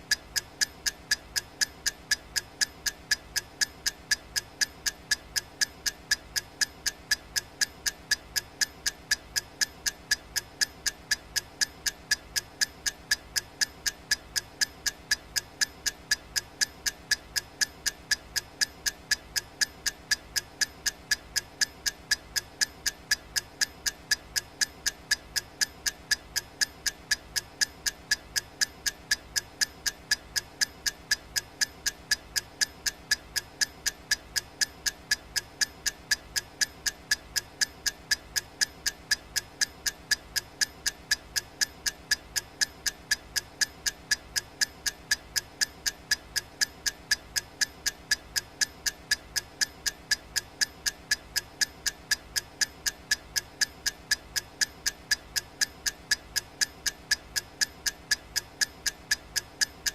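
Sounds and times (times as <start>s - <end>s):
countdown timer ticking: 0.0s - 59.9s.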